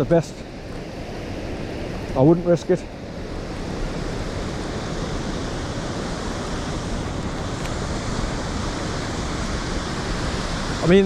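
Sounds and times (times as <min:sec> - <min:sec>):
waterfall rushing: 0:03.4 - 0:11.0.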